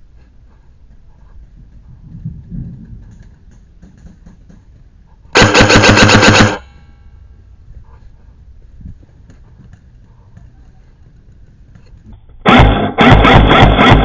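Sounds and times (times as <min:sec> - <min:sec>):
toy gun full-auto burst: 0:05.4 - 0:06.7, 0:12.5 - 0:14.0.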